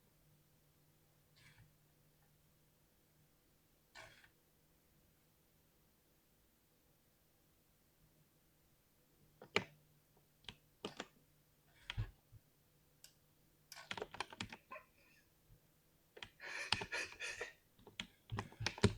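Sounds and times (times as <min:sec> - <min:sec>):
mechanical keyboard typing: 0:10.5 - 0:11.2, 0:11.8 - 0:12.2, 0:13.7 - 0:14.7, 0:16.2 - 0:17.2, 0:17.9 - 0:18.9.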